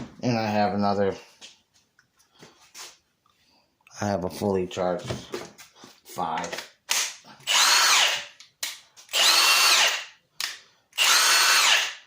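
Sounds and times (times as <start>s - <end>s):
impact wrench motor whine: 7.4s - 8.4s, 9.1s - 10.1s, 11.0s - 12.0s.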